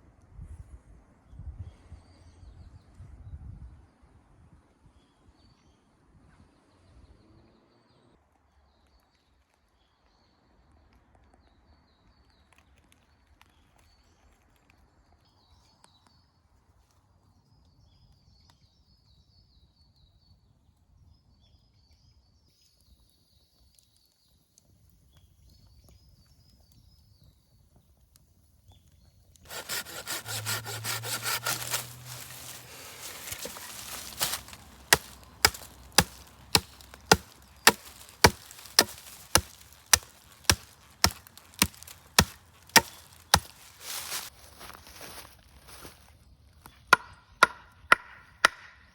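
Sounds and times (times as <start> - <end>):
hand sawing wood: 29.5 - 44.3
sharp wooden knocks: 29.5 - 44.3.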